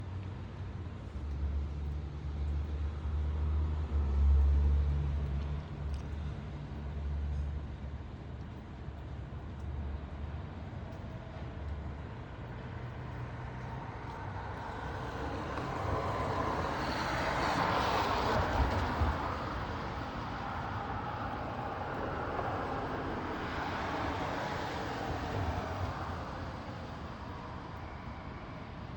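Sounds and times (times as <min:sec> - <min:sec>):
road traffic rumble: 0:00.1 - 0:28.9
passing vehicle tyre hiss: 0:14.4 - 0:28.5.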